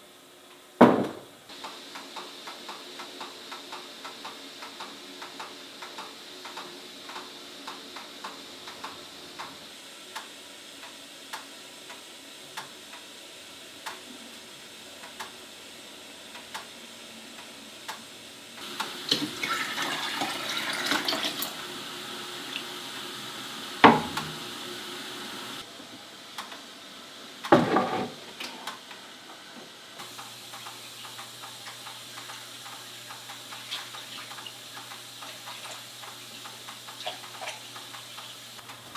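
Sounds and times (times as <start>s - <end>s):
water pouring and splashing: 18.6s - 25.6s, 30.0s - 38.6s
faint ticking: 30.0s - 38.9s.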